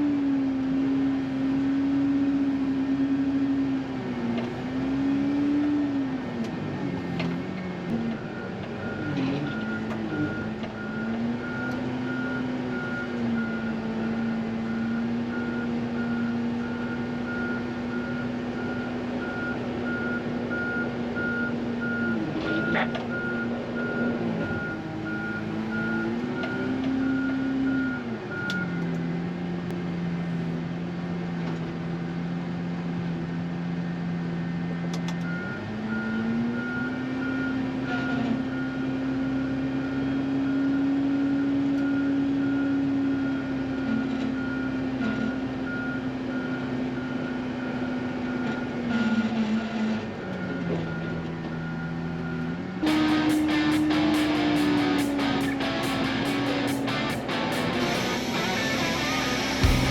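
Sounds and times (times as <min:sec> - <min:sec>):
diesel engine running: 0:51.6 - 0:59.9
backup alarm beeping: 0:52.9 - 0:59.9.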